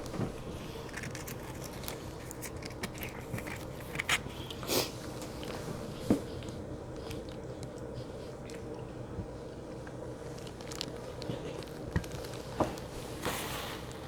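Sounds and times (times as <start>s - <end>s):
low steady hum: 0.0s - 14.0s
person chewing: 6.3s - 8.9s.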